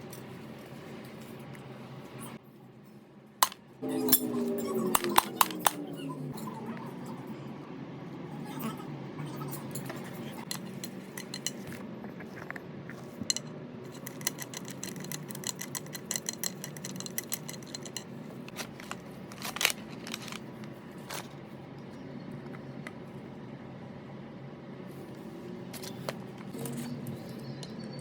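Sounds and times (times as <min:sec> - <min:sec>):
small metallic clicks and clinks: 0:13.3 - 0:18.1.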